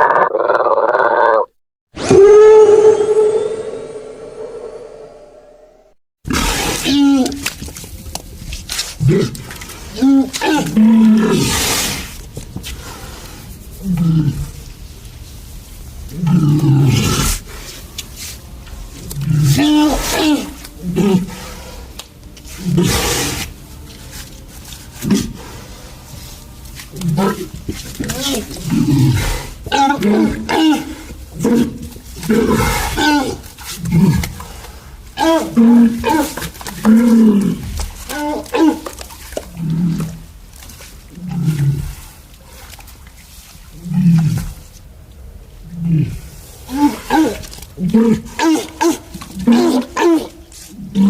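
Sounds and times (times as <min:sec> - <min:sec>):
creature growl: 0:00.0 - 0:06.0
creature moan falling in pitch: 0:00.0 - 0:06.0
creature roar: 0:00.0 - 0:06.0.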